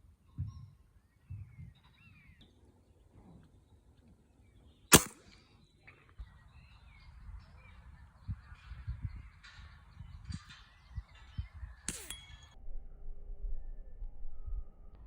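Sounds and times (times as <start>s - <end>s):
air rifle shot: 4.9s - 5.4s, 11.9s - 12.6s.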